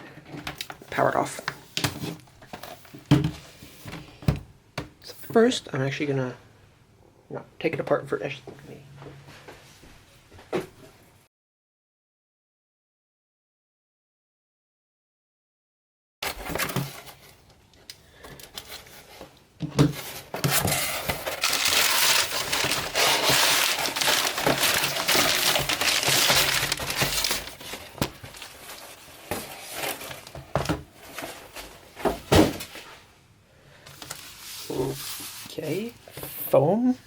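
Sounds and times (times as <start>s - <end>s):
clicks and rustles: 20.0s - 31.7s
wrapping crinkling and tearing: 20.5s - 30.4s.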